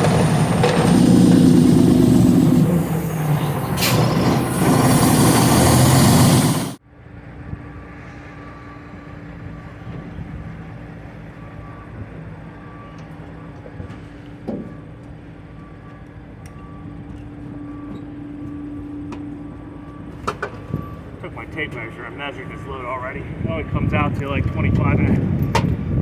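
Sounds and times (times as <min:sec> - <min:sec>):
truck engine idling: 0:00.0 - 0:06.8, 0:18.8 - 0:25.2
wind buffeting the microphone: 0:23.2 - 0:26.0.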